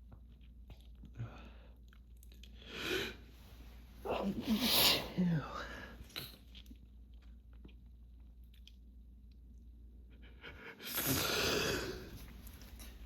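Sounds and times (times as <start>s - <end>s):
person sneezing: 4.0s - 6.3s.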